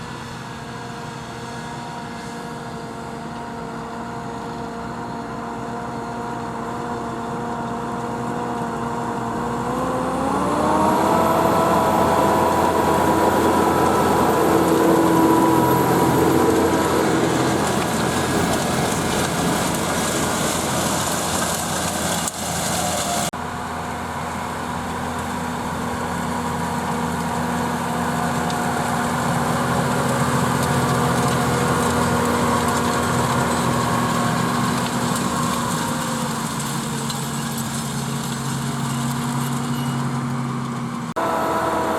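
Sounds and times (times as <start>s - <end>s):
tractor diesel engine under load: 0.0s - 41.9s
high thin whine: 11.1s - 22.1s.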